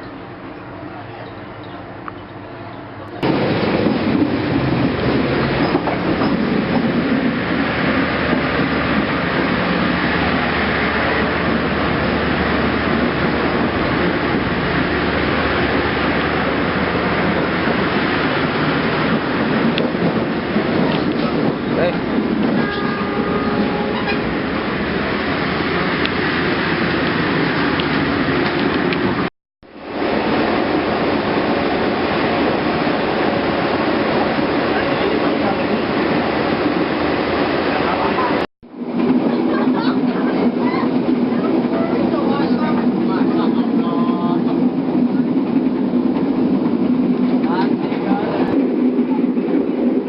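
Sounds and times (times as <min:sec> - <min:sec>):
train rumble: 0:00.0 - 0:50.0
train wheels clattering on rails: 0:03.2 - 0:09.5.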